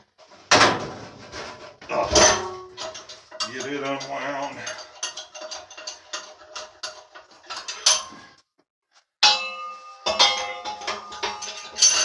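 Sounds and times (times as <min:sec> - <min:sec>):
loud ringing metal clanks: 0:09.2 - 0:12.0.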